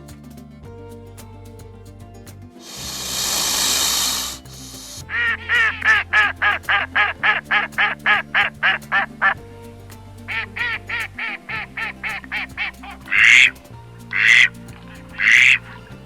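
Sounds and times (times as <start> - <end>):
background music: 0.0 - 16.0.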